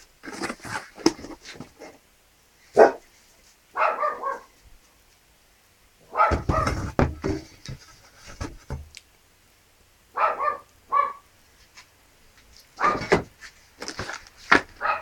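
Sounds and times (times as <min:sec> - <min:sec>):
dog barking: 0:02.8 - 0:03.0, 0:03.7 - 0:04.6, 0:06.1 - 0:06.8, 0:10.2 - 0:11.2, 0:12.8 - 0:13.1, 0:14.8 - 0:15.0.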